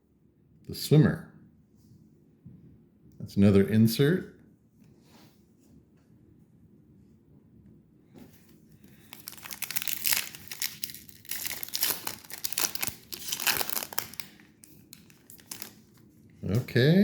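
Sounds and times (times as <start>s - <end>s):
foil wrapper crinkling: 8.8s - 16.1s.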